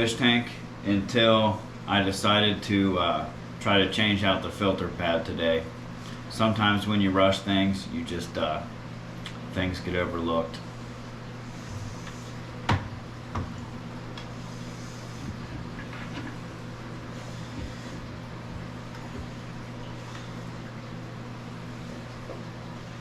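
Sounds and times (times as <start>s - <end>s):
steady low hum: 0.0s - 23.0s
knocks on fish tank filter: 12.6s - 13.6s.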